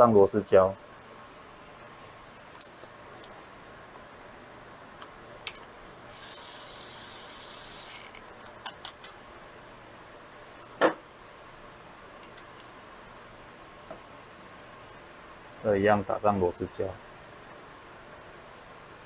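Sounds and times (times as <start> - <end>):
faint hiss: 5.5 - 8.5.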